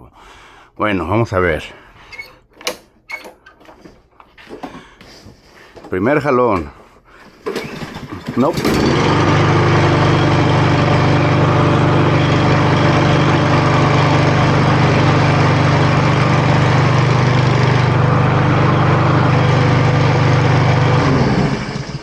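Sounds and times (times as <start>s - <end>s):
lawn mower engine running: 7.4s - 22.0s.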